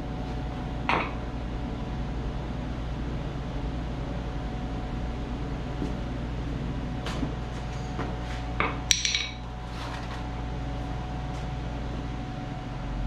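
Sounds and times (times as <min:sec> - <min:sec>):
steady low hum: 0:00.0 - 0:13.0
light metallic taps and clinks: 0:08.9 - 0:09.4.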